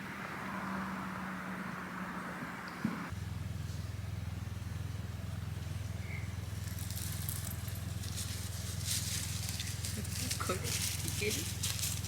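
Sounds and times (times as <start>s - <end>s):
low fluttering motor hum: 3.1s - 12.0s.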